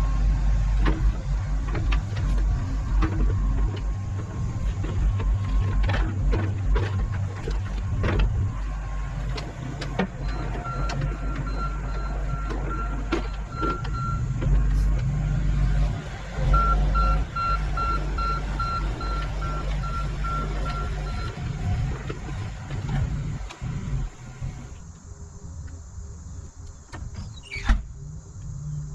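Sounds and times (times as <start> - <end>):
excavator diesel engine working: 0.0 - 28.9
backup alarm beeping: 10.1 - 14.4, 16.5 - 21.4.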